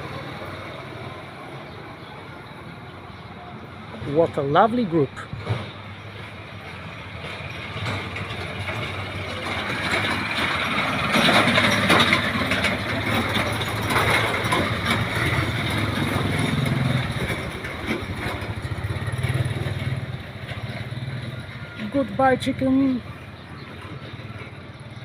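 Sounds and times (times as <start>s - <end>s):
vehicle engine humming: 0.0s - 25.0s.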